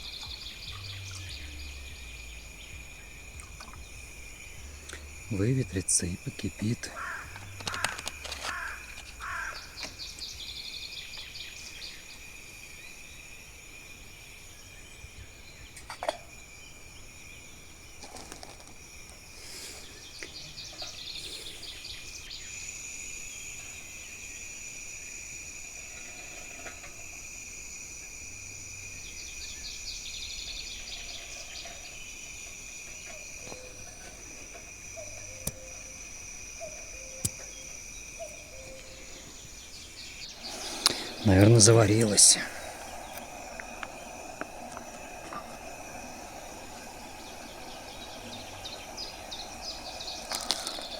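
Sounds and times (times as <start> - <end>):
songbird trilling: 0.0 - 12.0, 33.0 - 50.9.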